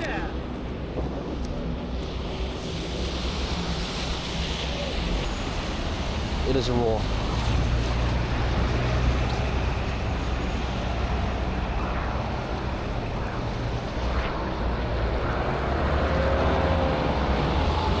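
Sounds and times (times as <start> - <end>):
street traffic rumble: 0.0 - 18.0
wind on microphone: 0.0 - 18.0.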